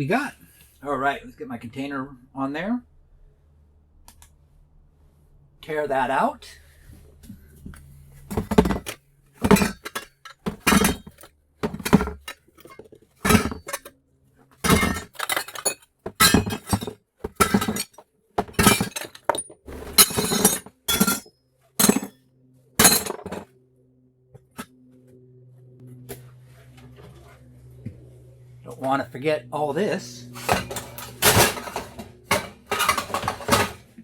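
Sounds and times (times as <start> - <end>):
scrap brass clanking into container: 8.3 - 13.9, 14.6 - 22.1, 22.8 - 23.5, 30.3 - 33.8.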